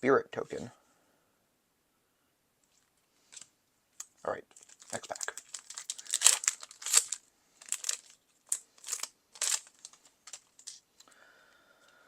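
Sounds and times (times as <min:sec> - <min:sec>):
foil wrapper tearing and crinkling: 0:03.3 - 0:10.8.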